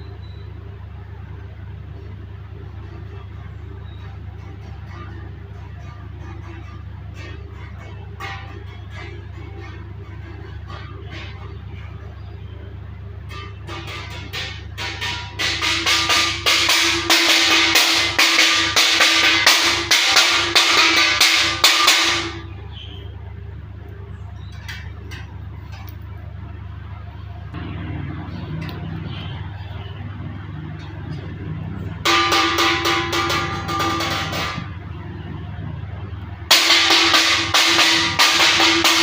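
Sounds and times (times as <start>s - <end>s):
plate being knocked rapidly: 13.3s - 22.5s, 32.0s - 34.8s, 36.5s - 39.0s.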